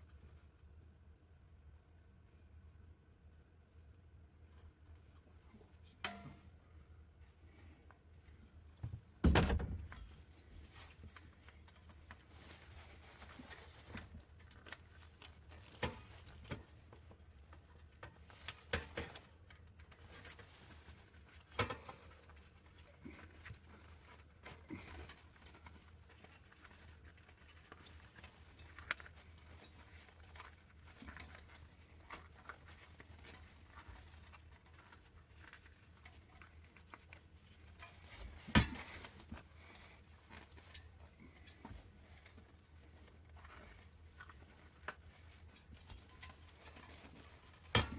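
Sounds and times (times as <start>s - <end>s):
hands working a wheelchair tyre: 36.0s - 47.9s.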